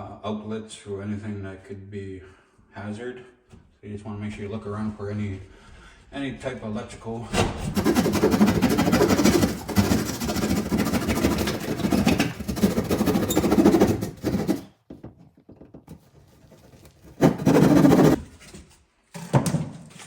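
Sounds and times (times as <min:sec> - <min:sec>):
saw cutting through drywall: 0:07.4 - 0:14.8, 0:16.0 - 0:18.6.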